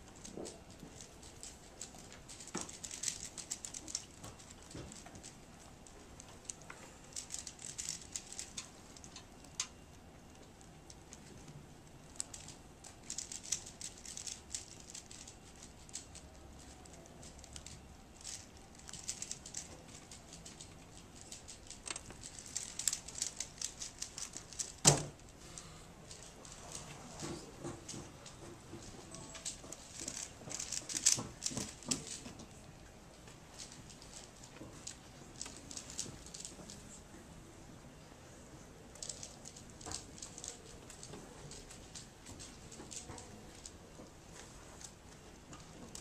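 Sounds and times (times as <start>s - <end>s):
puzzle cube plastic clicks: 0.2s - 25.2s, 29.3s - 32.3s.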